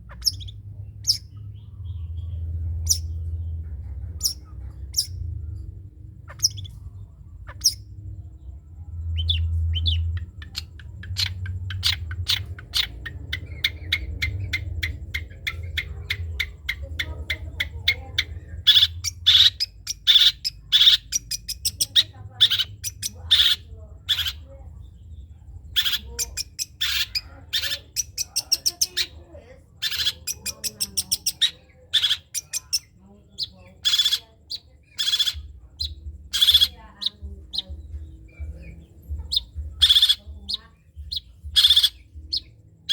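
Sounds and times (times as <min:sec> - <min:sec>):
bird singing rapid notes: 0:00.0 - 0:42.9
faint low hum: 0:00.0 - 0:42.9.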